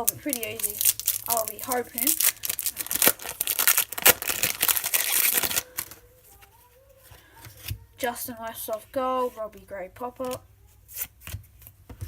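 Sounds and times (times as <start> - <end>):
rustling and crinkling of cards: 0.0 - 7.9.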